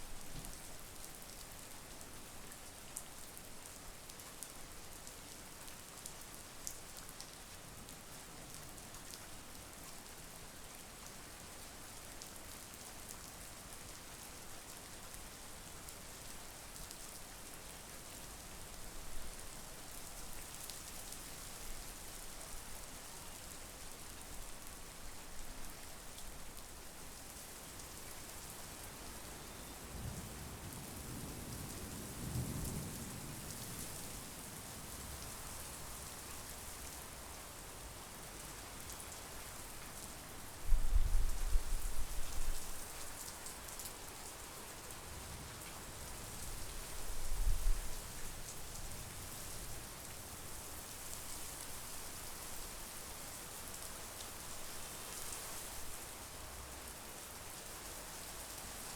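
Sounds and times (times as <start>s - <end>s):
steady rain falling: 0.0s - 58.9s.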